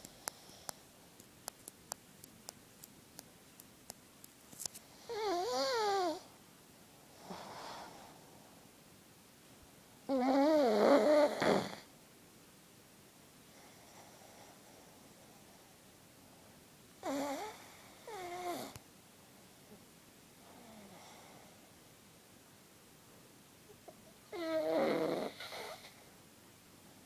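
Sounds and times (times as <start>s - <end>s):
faint ticks: 0.0s - 4.9s
dog snoring: 5.0s - 6.2s, 10.1s - 11.9s, 17.0s - 18.8s, 24.3s - 26.0s
soft breath: 7.0s - 8.6s.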